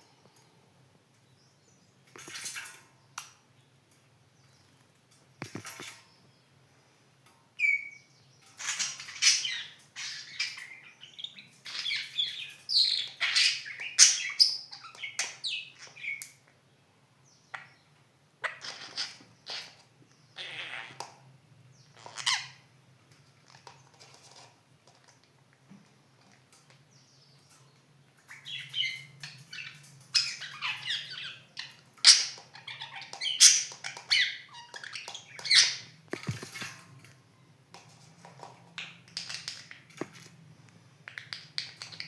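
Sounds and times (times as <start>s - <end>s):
budgerigars chirping: 8.6s - 16.2s, 28.3s - 36.4s.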